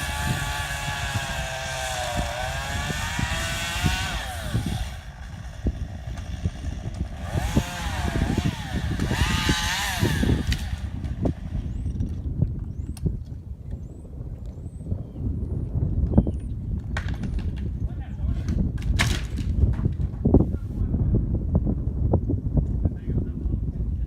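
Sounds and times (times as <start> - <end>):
chainsaw revving: 0.0 - 12.0.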